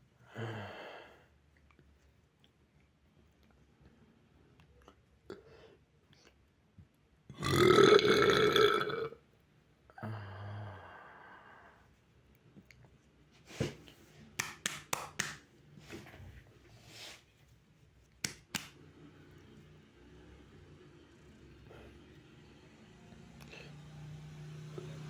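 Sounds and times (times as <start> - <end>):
boy burping: 7.4 - 9.2.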